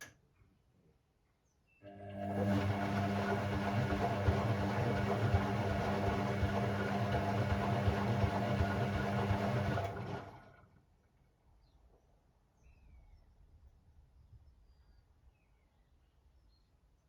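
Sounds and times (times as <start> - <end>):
washing machine humming: 1.8 - 10.8.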